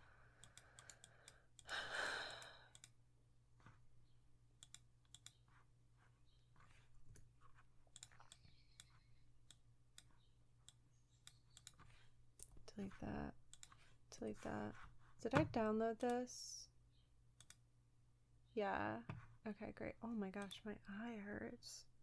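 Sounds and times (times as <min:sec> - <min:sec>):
mouse and keyboard clicks: 0:04.6 - 0:05.5, 0:06.6 - 0:12.9, 0:13.5 - 0:14.5, 0:17.4 - 0:17.6.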